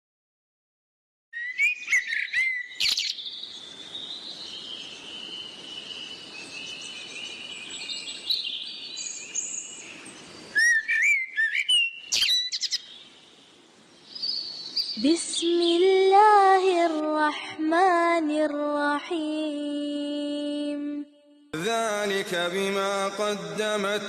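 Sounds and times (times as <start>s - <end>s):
birds chirping and singing: 1.4s - 17.0s.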